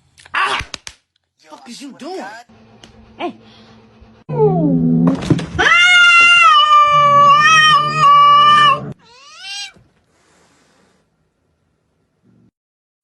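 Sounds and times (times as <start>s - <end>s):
cat yowling: 5.6s - 9.8s.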